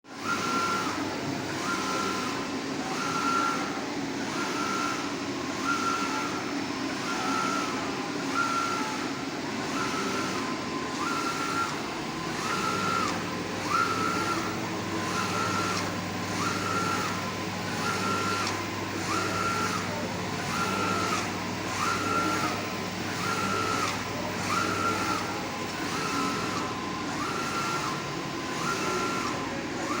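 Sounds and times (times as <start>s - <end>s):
mechanical running noise: 7.1s - 30.0s.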